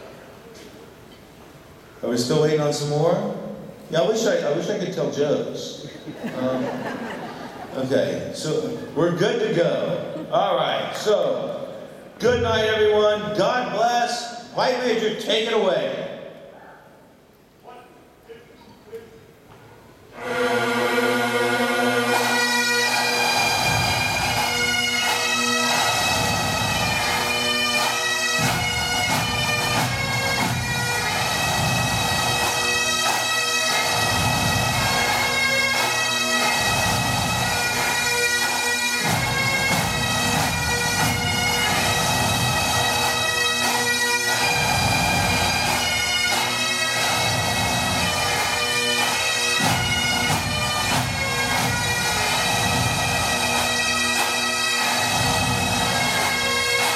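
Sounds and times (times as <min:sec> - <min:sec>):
bagpipes playing a tune: 0:20.2 - 0:56.9.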